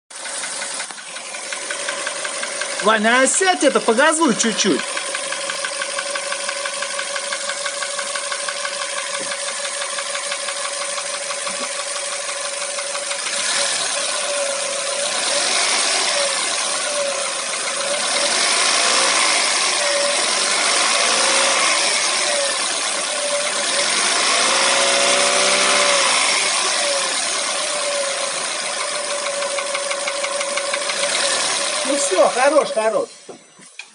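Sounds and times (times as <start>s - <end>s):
car engine idling with knock: 0.1s - 31.8s
engine revving: 0.1s - 33.1s.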